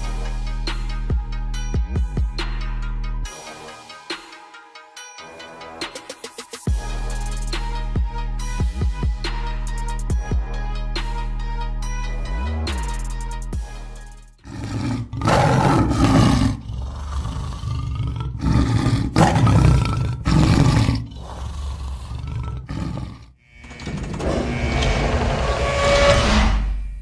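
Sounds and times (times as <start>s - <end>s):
background music: 0.0s - 17.1s
loud rough animal roars: 14.4s - 23.4s.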